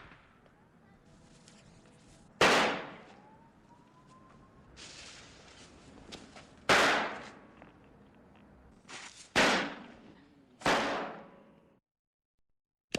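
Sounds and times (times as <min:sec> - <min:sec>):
firecracker bangs: 0:02.4 - 0:03.1, 0:06.7 - 0:07.3, 0:09.3 - 0:09.9.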